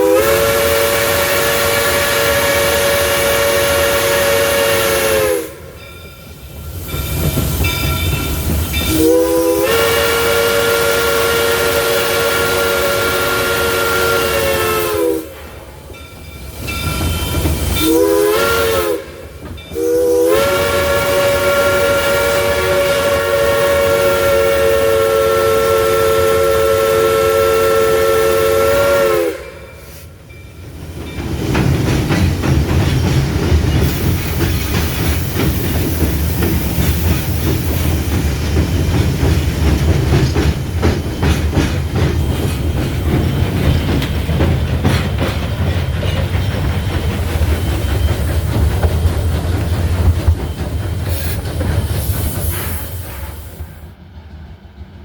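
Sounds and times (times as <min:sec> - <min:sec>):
steam locomotive chime whistle: 0:00.0 - 0:31.2, 0:50.5 - 0:54.0
train rumbling and clattering: 0:00.0 - 0:55.0.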